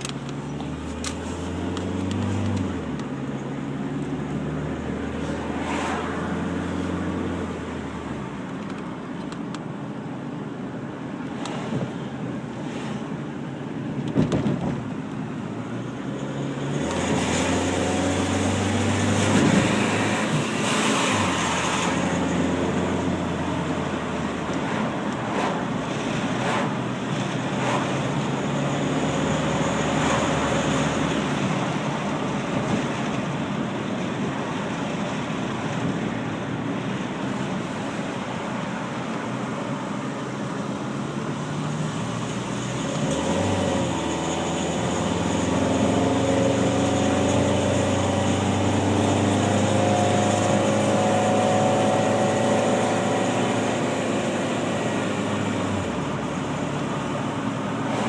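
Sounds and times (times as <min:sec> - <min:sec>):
car engine pulling under load: 0:00.0 - 0:08.9.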